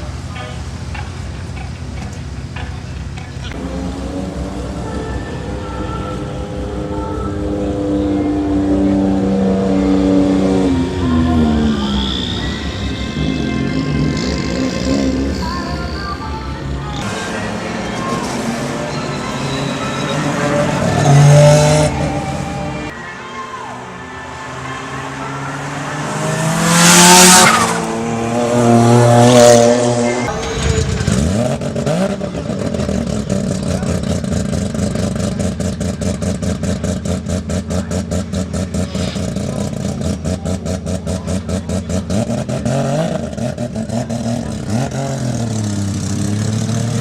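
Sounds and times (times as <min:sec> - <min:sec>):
car engine idling lumpily: 0:00.0 - 0:09.8, 0:30.3 - 0:42.7
sports car engine revving: 0:00.9 - 0:15.6, 0:16.8 - 0:23.0, 0:24.1 - 0:47.0.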